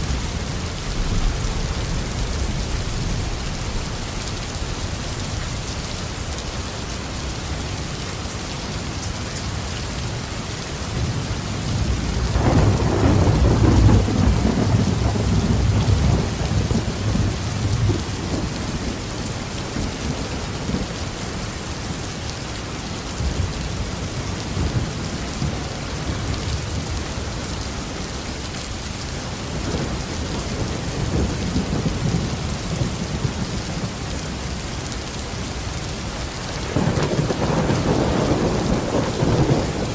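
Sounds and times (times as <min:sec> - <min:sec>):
thunder rolling: 0:00.0 - 0:05.4, 0:11.7 - 0:21.0, 0:36.5 - 0:39.9
heavy rain on a roof: 0:00.0 - 0:39.9.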